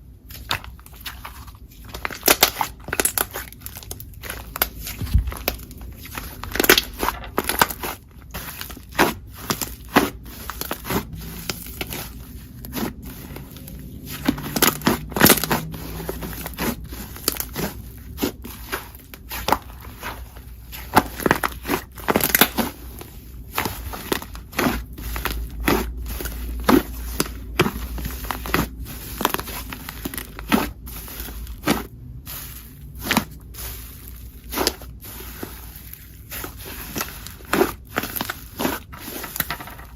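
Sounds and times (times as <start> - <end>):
slime crackling and popping: 0.3 - 31.9.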